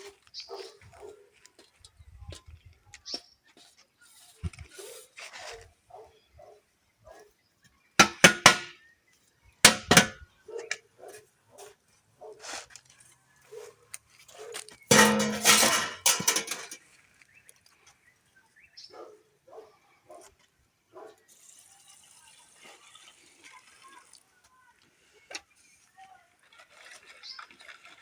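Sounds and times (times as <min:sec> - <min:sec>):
loud clattering knocks: 0:09.7 - 0:10.2.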